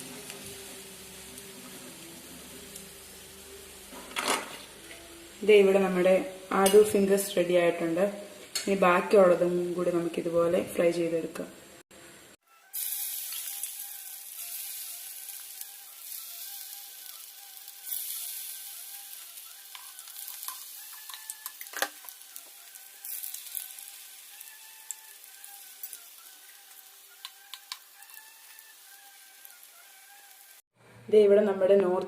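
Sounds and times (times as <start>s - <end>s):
potatoes sizzling in hot oil: 0.0s - 3.9s, 12.6s - 30.6s
oil popping and crackling: 13.3s - 30.3s.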